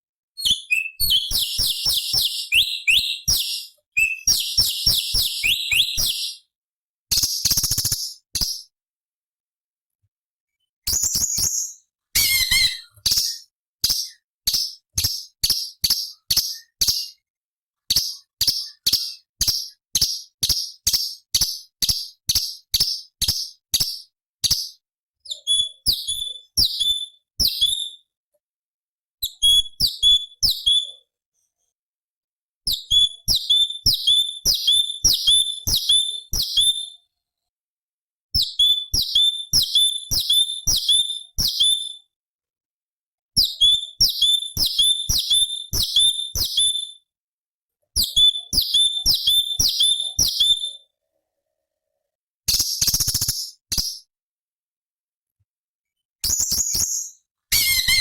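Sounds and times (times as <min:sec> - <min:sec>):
bird calling sharp falling notes: 0:12.2 - 0:12.9, 0:57.5 - 0:58.0.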